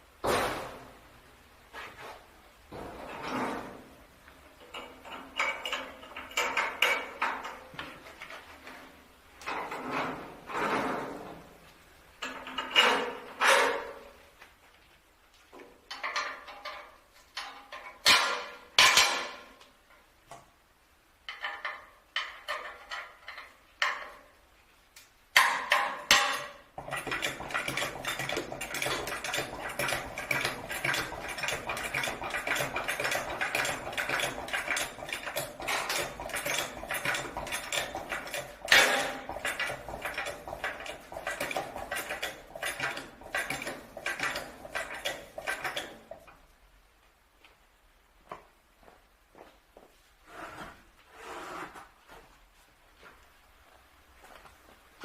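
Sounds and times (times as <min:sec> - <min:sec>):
metal parts clanking: 0:04.6 - 0:08.4, 0:25.4 - 0:46.2.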